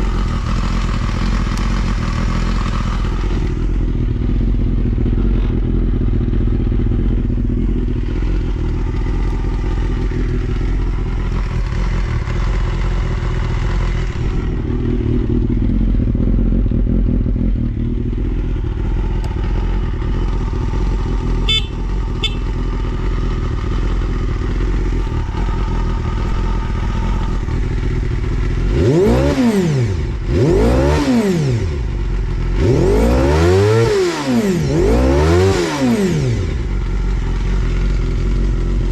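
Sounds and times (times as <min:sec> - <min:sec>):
motorcycle engine idling: 0:00.0 - 0:38.9
engine revving blips: 0:21.3 - 0:22.6, 0:28.6 - 0:31.8, 0:32.6 - 0:36.6.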